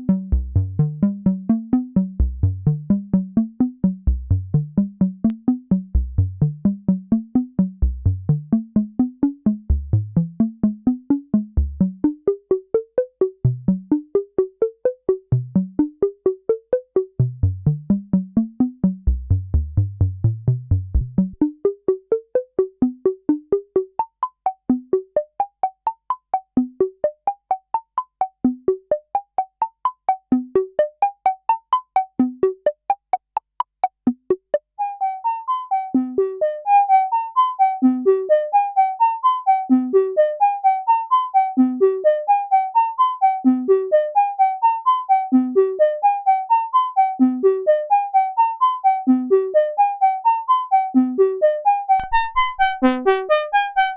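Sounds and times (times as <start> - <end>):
synthesizer bass line: 52.0 - 53.9.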